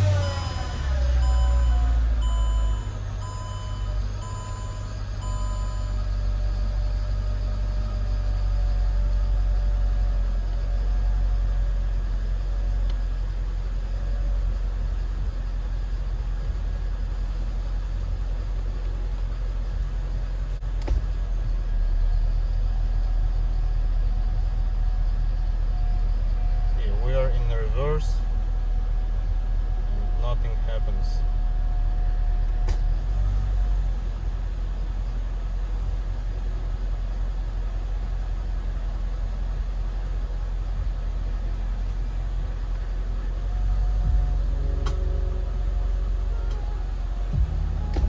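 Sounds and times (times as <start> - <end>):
car electronic beeps: 0.0 - 6.2
car engine idling: 0.0 - 48.0.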